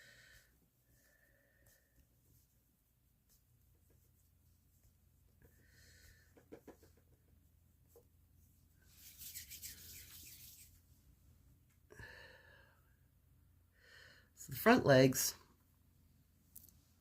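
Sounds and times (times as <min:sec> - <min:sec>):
fingers rubbing modelling clay: 0:08.8 - 0:10.8.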